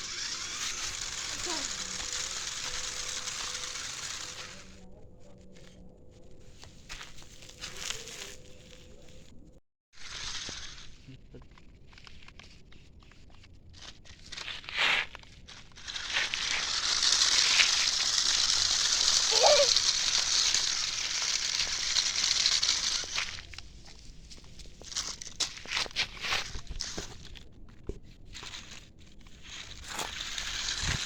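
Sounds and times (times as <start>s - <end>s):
toy truck driving over rough ground: 0.0s - 9.4s, 10.0s - 31.0s
rough crackling hiss: 15.9s - 25.6s.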